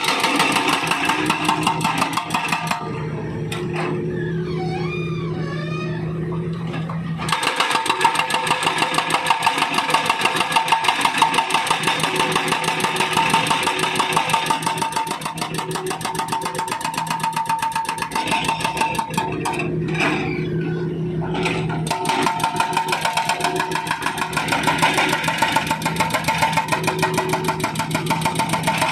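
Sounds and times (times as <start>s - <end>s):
hydraulic breaker hammering asphalt: 0.0s - 3.0s, 7.3s - 19.8s, 21.5s - 28.9s
diesel engine running: 0.0s - 28.9s.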